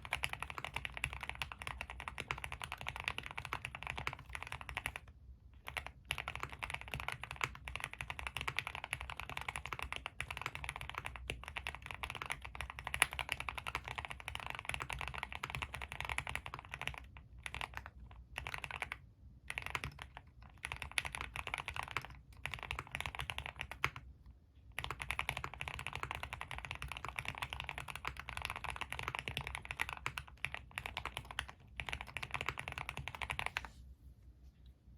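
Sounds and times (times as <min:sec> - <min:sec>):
mechanical keyboard typing: 0:00.0 - 0:24.1, 0:24.7 - 0:33.7.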